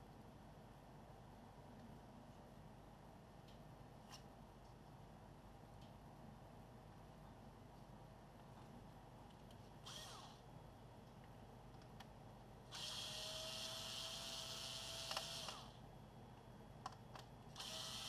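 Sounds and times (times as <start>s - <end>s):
electric screwdriver motor whine: 9.8s - 10.4s, 12.7s - 15.8s, 17.6s - 18.0s.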